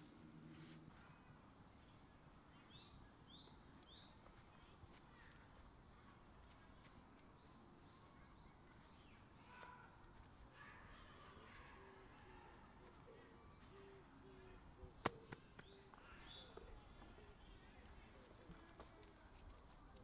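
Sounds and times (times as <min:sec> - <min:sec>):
small birds chirping: 0:01.2 - 0:20.0.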